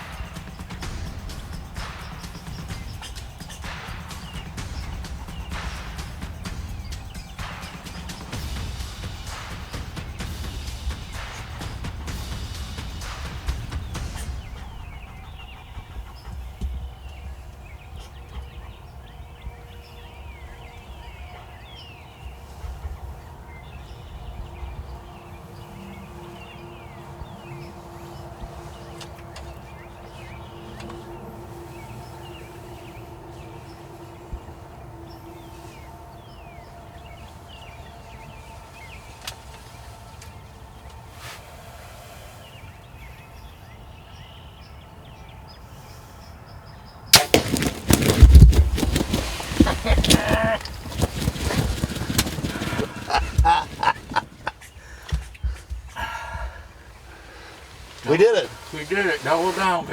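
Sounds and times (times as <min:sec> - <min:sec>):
small bird chirping: 0:00.0 - 0:11.6
steady low rumble: 0:00.0 - 0:39.2
songbirds chirping: 0:00.0 - 0:59.9
loud rustling and knocking: 0:47.2 - 0:56.0.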